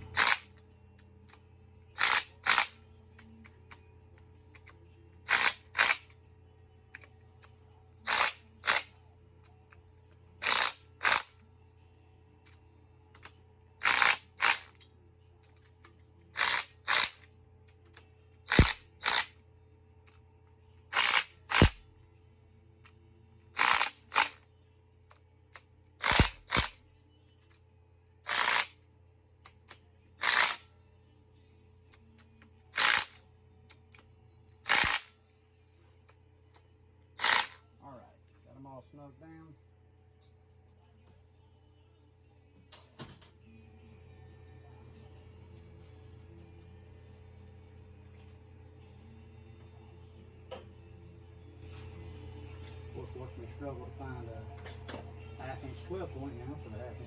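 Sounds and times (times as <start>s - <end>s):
hand ratchet clicking: 0.1s - 0.5s, 2.0s - 2.8s, 5.3s - 6.1s, 8.1s - 9.0s, 10.4s - 11.3s, 13.2s - 14.8s, 16.4s - 17.3s, 17.9s - 19.3s, 20.9s - 21.8s, 23.6s - 24.4s, 26.0s - 26.8s, 28.3s - 28.8s, 29.6s - 30.6s, 32.8s - 33.2s, 34.7s - 35.1s, 37.2s - 37.6s.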